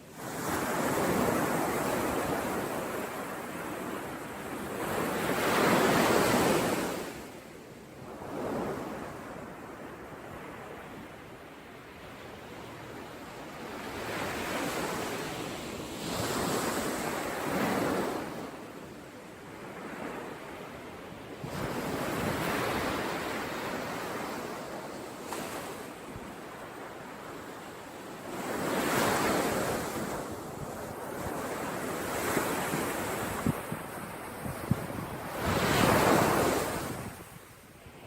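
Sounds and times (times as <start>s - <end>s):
waves breaking on shore: 21.4s - 38.0s.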